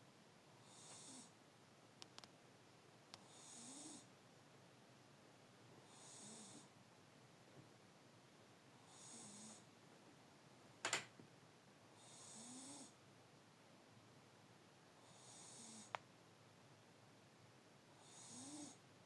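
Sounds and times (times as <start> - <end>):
pet snoring quietly: 0.6 - 1.4, 3.1 - 4.1, 5.8 - 6.8, 8.8 - 9.7, 11.9 - 13.0, 15.0 - 16.0, 17.9 - 18.8.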